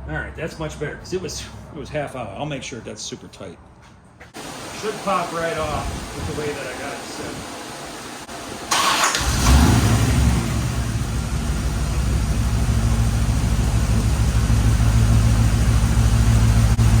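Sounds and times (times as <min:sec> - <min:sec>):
car engine starting and idling: 0:04.4 - 0:17.0.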